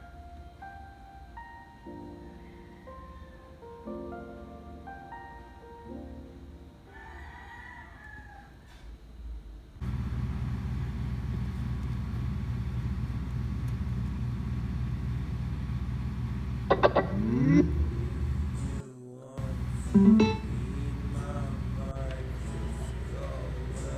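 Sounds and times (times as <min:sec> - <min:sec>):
rooster crowing: 0:06.9 - 0:08.9, 0:15.2 - 0:18.8, 0:19.4 - 0:23.9
steady low rumble: 0:09.8 - 0:18.8, 0:19.4 - 0:23.9.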